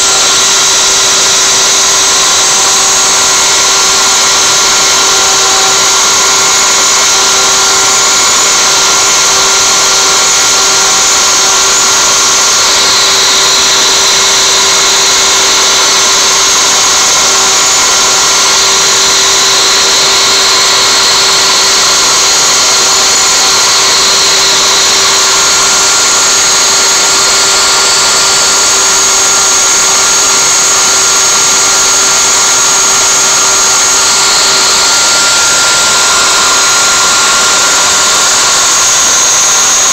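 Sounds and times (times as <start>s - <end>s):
router spindle high whine: 0.0s - 39.9s
wood cutting hiss: 0.0s - 39.9s.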